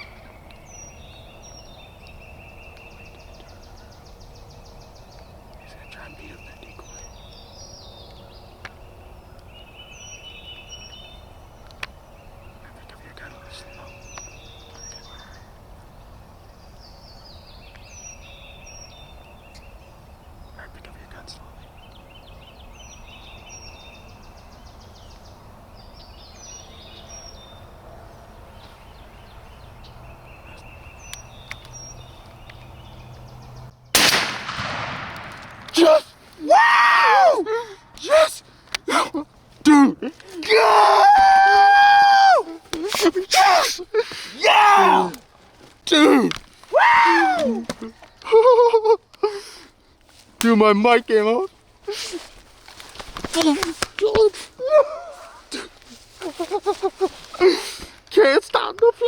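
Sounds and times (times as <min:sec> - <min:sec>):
bird calls with stepped notes: 0:00.0 - 0:33.8
loud gunshot: 0:34.0 - 0:35.8.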